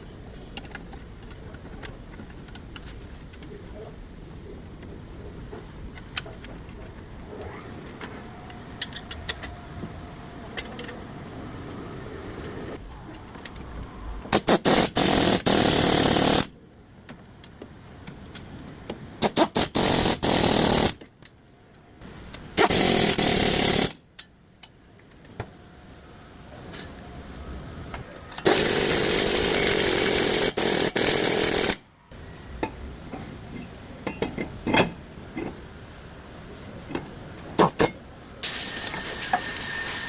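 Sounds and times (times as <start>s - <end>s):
power tool bursts: 19.2s - 21.0s, 22.6s - 24.0s, 28.4s - 31.8s, 37.8s - 40.0s.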